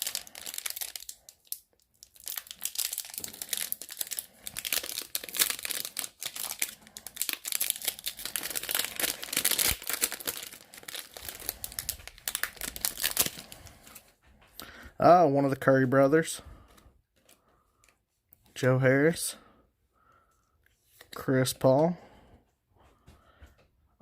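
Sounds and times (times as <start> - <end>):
plastic wrapper crinkling and tearing: 0.0 - 14.1.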